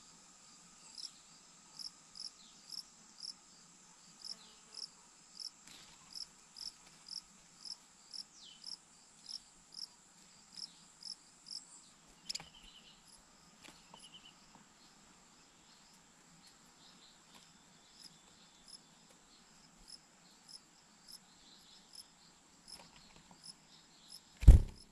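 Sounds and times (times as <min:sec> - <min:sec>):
cricket chirping: 0:00.8 - 0:03.4.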